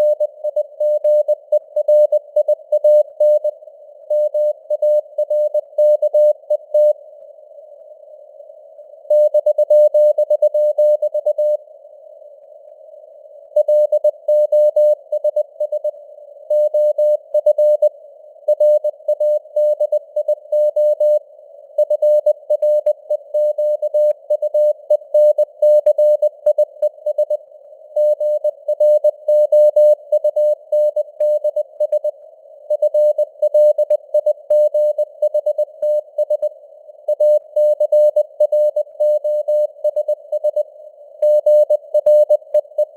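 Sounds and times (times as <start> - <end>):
morse code beeps: 41.2 - 42.9.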